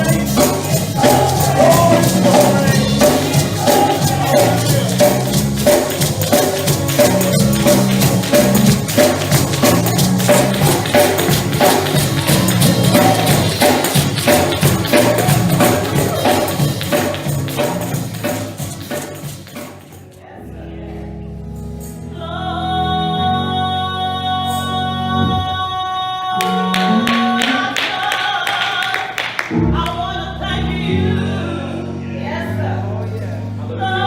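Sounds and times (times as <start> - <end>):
bass line: 0.0 - 18.7, 26.4 - 28.4
tambourine shaken: 0.0 - 20.2.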